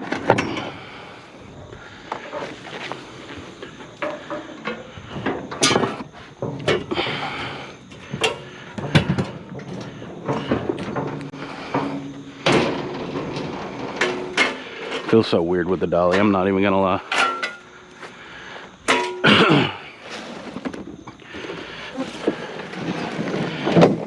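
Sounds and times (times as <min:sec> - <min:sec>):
refrigerator knocking and clunking: 0:08.1 - 0:14.4.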